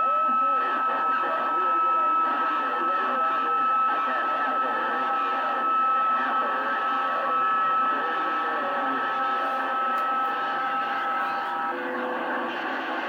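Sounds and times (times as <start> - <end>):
radio hiss: 0.0 - 13.0.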